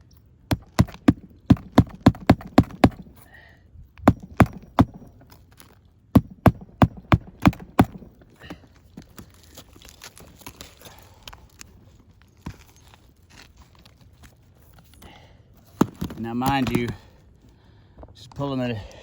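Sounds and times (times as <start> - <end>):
hammer driving nails: 0.5 - 3.2, 4.0 - 5.3, 6.2 - 8.6, 15.8 - 17.0.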